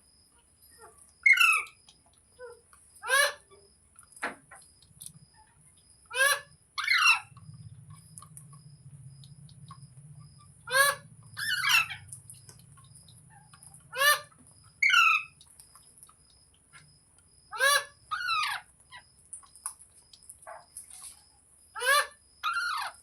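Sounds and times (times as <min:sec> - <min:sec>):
parrot screeching: 0:03.0 - 0:03.4, 0:06.1 - 0:07.3, 0:10.6 - 0:12.1, 0:13.9 - 0:15.3, 0:17.5 - 0:18.7, 0:21.8 - 0:23.0.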